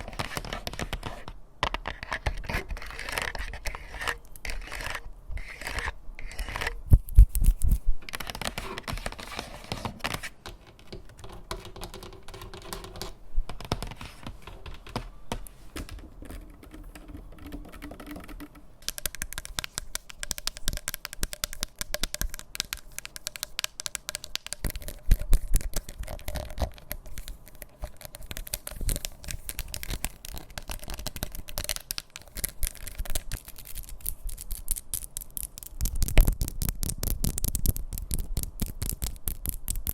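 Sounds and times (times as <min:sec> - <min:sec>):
nails scratching on objects: 0:00.0 - 0:13.2.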